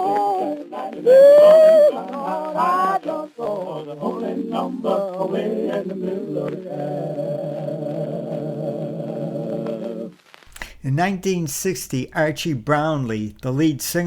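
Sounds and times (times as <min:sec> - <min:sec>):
male gospel vocal group singing: 0:00.0 - 0:07.2, 0:10.9 - 0:14.0.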